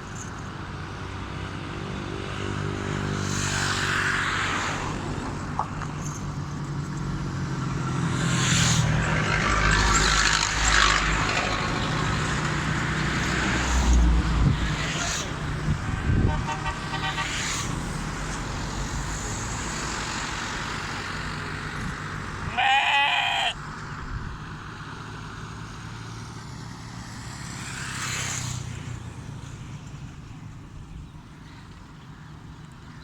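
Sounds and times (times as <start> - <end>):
low hum of engines and traffic: 0.0 - 33.0
livestock animal bleating: 22.5 - 23.6.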